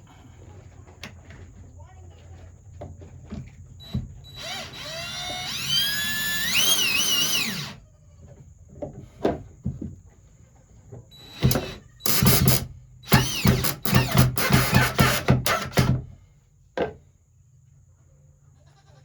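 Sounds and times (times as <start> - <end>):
cordless drill whining: 3.8 - 7.8, 11.1 - 16.2.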